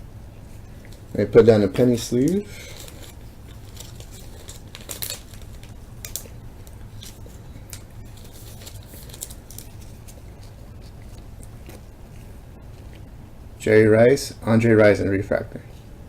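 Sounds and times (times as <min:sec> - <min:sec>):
low steady hum: 0:00.0 - 0:16.0
plastic sleeve crinkling: 0:00.8 - 0:13.1.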